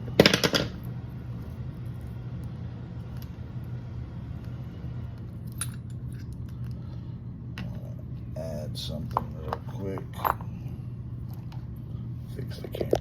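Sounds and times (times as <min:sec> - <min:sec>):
low background hum: 0:00.0 - 0:13.0
small metal parts clinking: 0:05.5 - 0:06.4.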